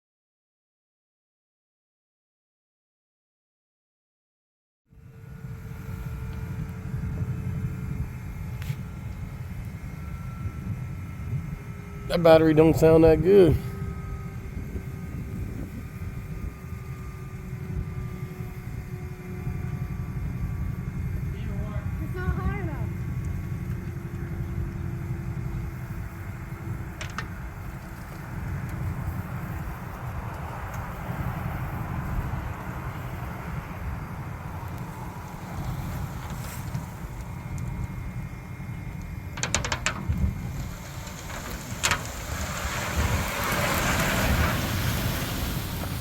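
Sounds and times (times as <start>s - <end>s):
engine low rumble: 4.9s - 46.0s
faint steady hum: 4.9s - 46.0s
gravel scraping and pouring: 25.8s - 37.5s, 39.3s - 46.0s
rocks clinking: 39.4s - 43.8s.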